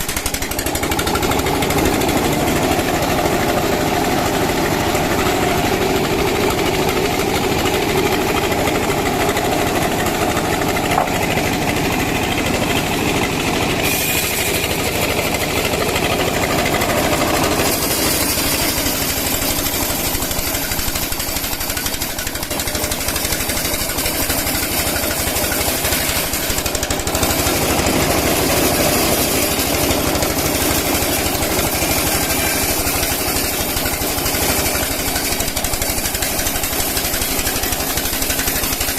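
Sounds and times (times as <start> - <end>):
sawmill machinery running: 0.0 - 38.9.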